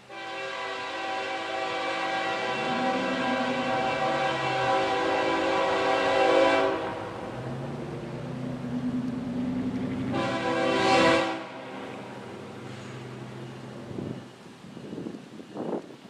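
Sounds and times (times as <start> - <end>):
locomotive air horn chord: 0.0 - 7.4, 10.1 - 12.1
passing train rumble: 0.0 - 16.0.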